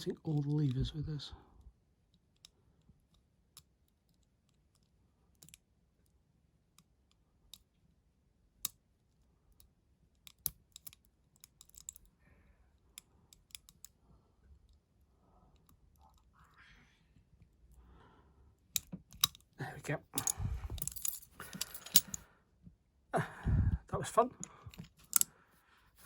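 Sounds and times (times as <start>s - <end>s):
metallic clicks of lock picking: 2.4s - 5.7s, 9.5s - 12.1s, 13.0s - 14.0s, 18.7s - 19.6s, 20.2s - 22.2s, 24.4s - 25.3s.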